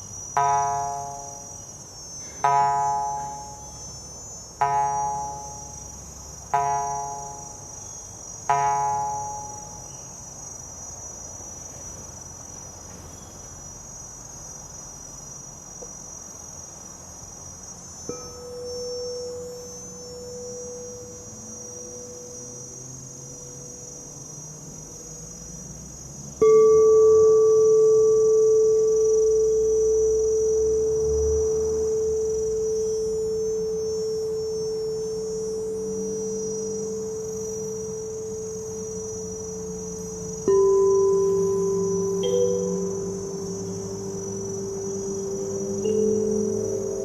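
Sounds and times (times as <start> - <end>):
struck singing bowl ringing: 0.0 - 10.2, 18.0 - 22.8, 26.4 - 47.0
insect chirring: 0.0 - 47.0
soft sustained pure tone: 0.0 - 47.0
plucked string notes: 0.4 - 1.5, 2.4 - 3.6, 4.6 - 5.8, 6.5 - 7.6, 8.5 - 9.8.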